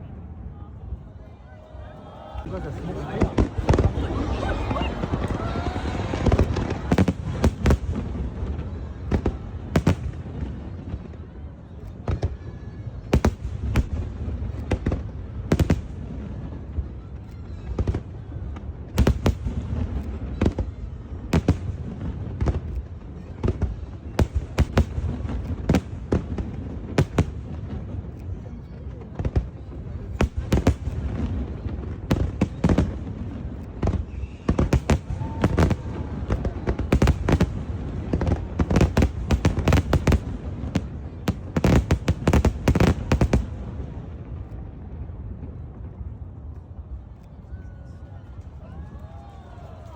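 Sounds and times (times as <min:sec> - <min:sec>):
fireworks bangs and crackles: 0:00.0 - 0:49.9.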